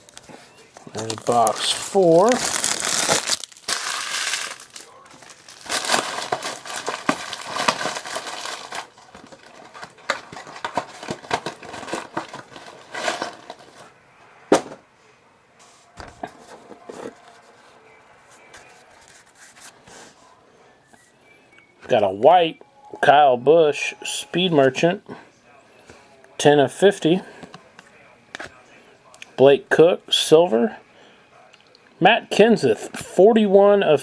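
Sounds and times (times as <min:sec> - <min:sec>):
cards rustling and clicking: 0:00.0 - 0:13.9
wrappers crinkling and tearing: 0:00.0 - 0:13.9.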